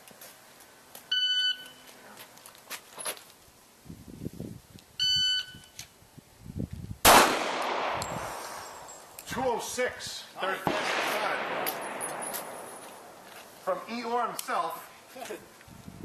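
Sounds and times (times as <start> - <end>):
handgun shot with echo: 7.1 - 8.4, 10.6 - 13.1.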